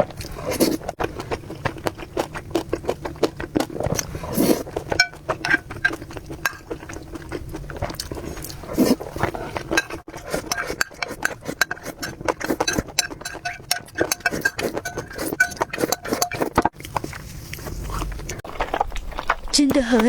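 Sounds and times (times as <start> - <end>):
chewing and slurping noodles: 0.0 - 20.0
utensils clinking against bowl: 4.6 - 16.8.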